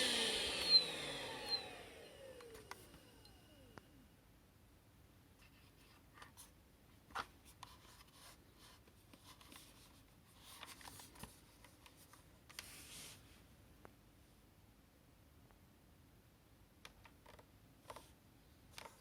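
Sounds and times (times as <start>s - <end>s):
rubbing or rustling: 7.1s - 13.4s.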